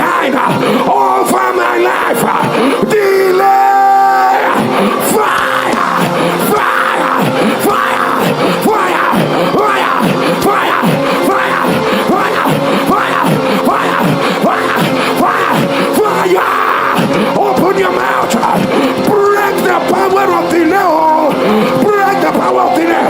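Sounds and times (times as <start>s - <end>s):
congregation praying aloud: 0.0s - 23.0s
man praying loudly: 0.0s - 23.0s
sustained keyboard chords: 0.0s - 23.0s.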